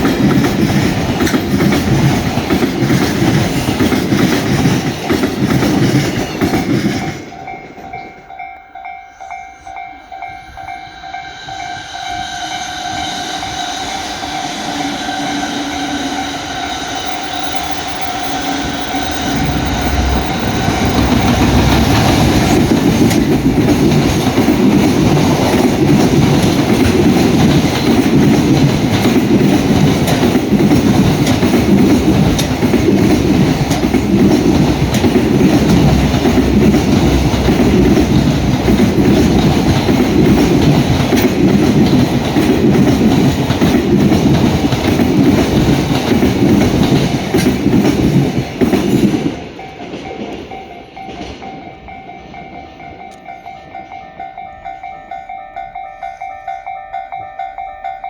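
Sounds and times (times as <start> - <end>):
train hum of several tones: 0.0 - 58.0
wheels clattering over rail joints: 17.7 - 50.6.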